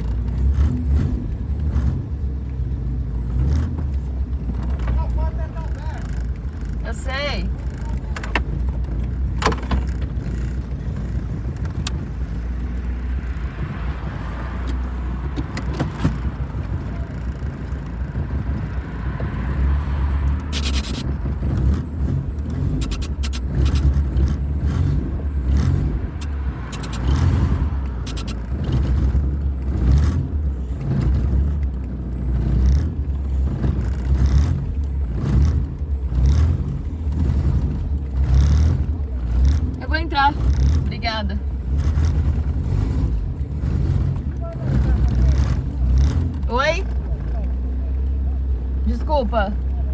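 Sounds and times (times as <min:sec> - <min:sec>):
car engine rumbling: 0:00.0 - 0:49.9
clicks: 0:22.8 - 0:23.9, 0:26.2 - 0:27.2, 0:27.8 - 0:28.5.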